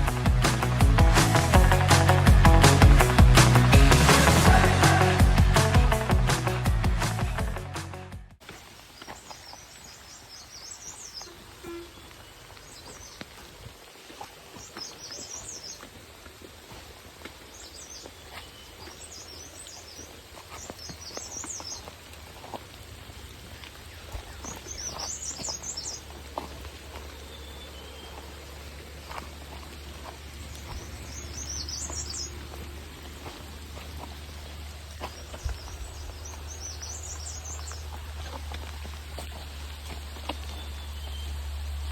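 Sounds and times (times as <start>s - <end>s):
small bird twittering: 30.6s - 32.6s.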